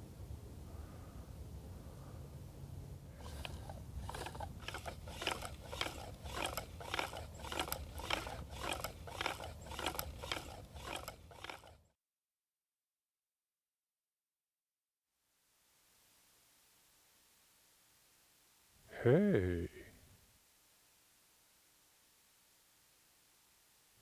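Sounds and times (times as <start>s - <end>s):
bow drill spindle grinding and squeaking: 3.2s - 11.8s.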